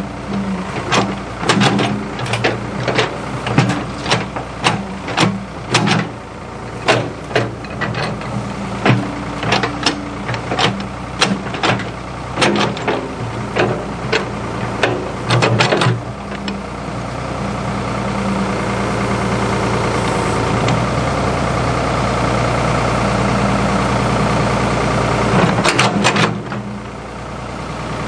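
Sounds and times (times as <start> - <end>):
backhoe diesel engine running: 0.0 - 28.0
metal clanks and knocks: 0.3 - 18.0, 25.4 - 26.9.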